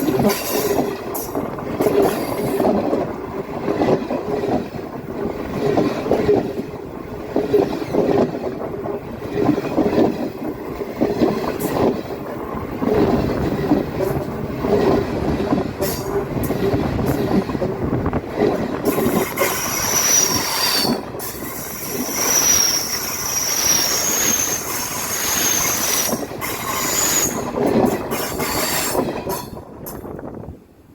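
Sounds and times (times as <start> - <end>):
train clattering over rails: 0.0 - 30.4
high wavering wheel squeal: 19.6 - 21.0, 21.9 - 26.1.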